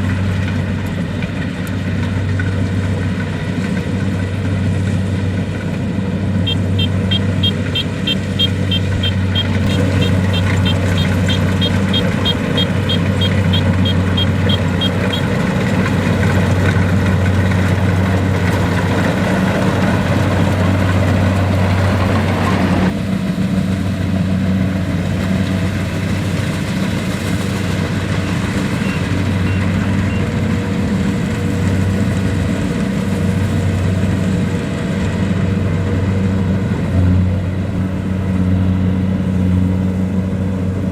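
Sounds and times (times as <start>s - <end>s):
combine harvester diesel engine: 0.0s - 40.9s
machine rushing noise: 5.4s - 29.3s
rapid high beeping: 6.4s - 15.7s.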